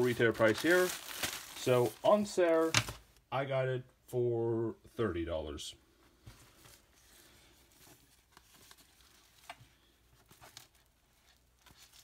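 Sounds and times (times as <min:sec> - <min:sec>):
rustling of shirt packaging: 0:00.0 - 0:03.2, 0:06.2 - 0:12.0.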